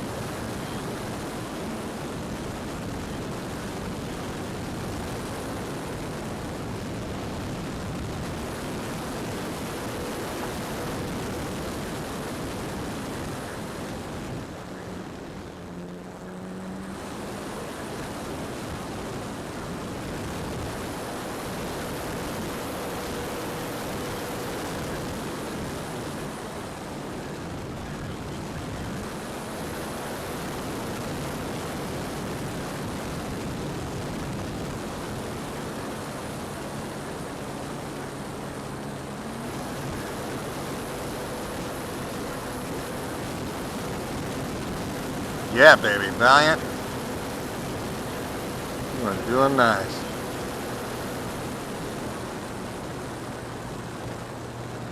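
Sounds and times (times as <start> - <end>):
faint aircraft propeller hum: 0.0 - 54.9.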